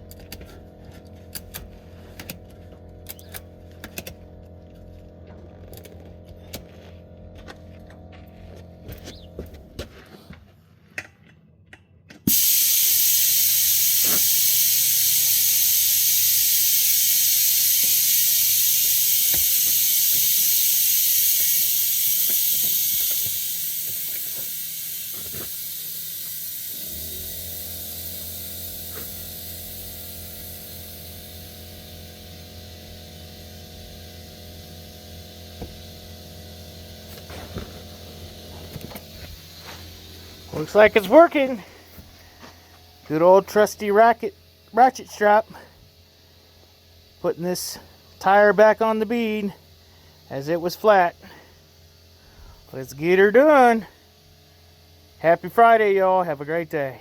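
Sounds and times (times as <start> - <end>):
compressed air hissing into tire: 0.0 - 4.2, 12.3 - 57.0
steady motor hum: 0.0 - 10.6, 12.1 - 57.0.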